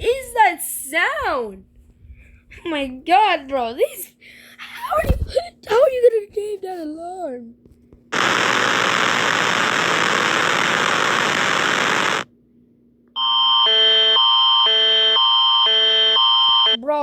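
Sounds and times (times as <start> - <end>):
harsh static noise: 8.2 - 12.3
electronic two-tone alarm: 13.2 - 16.8.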